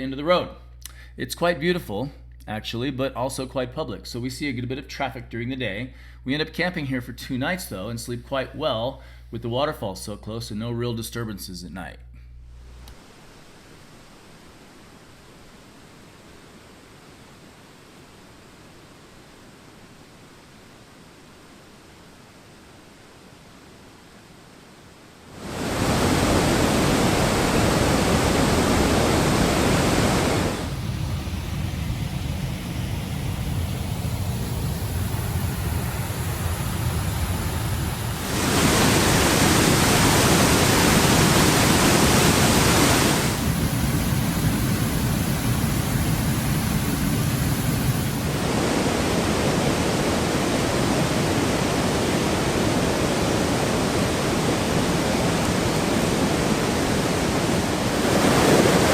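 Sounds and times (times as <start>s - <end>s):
waterfalls rushing: 25.3s - 30.9s, 36.1s - 58.9s.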